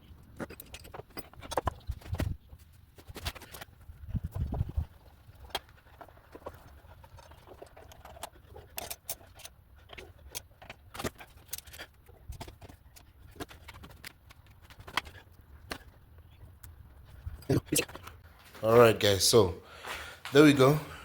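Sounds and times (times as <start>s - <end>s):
clicks and knocks of tools: 5.5s - 16.0s.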